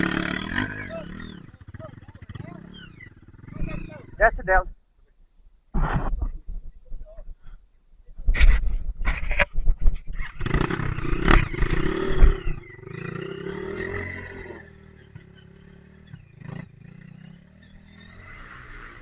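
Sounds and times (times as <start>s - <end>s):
dirt bike engine revving: 0.0s - 4.6s, 10.1s - 19.0s.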